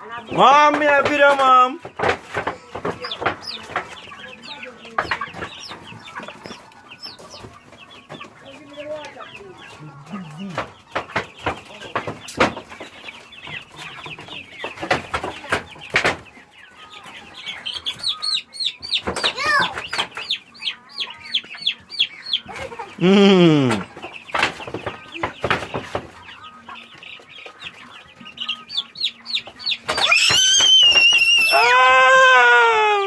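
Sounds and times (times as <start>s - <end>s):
chicks peeping and clucking: 0.0s - 33.0s
knocks: 0.3s - 4.0s
person humming low mmm: 23.0s - 23.8s
loud high squeal: 30.1s - 31.6s.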